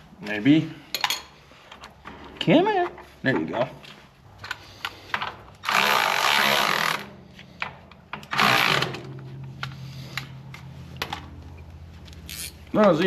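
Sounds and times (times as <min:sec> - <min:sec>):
cordless power tool running: 0:05.6 - 0:07.1, 0:08.4 - 0:09.1.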